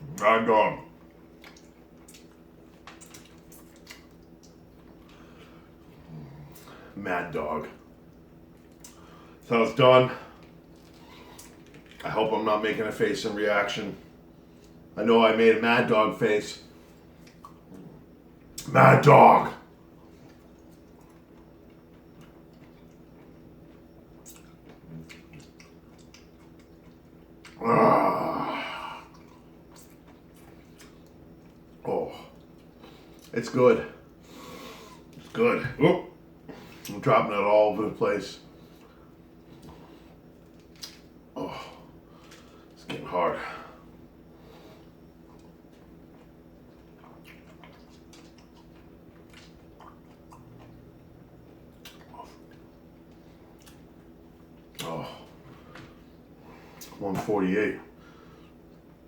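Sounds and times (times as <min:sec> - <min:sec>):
steady low hum: 0:00.0 - 0:59.0
chewing sounds: 0:01.0 - 0:06.8, 0:16.9 - 0:18.7, 0:19.9 - 0:27.6, 0:29.0 - 0:33.4, 0:38.5 - 0:41.2, 0:44.7 - 0:56.0
long low burp: 0:27.5 - 0:29.1.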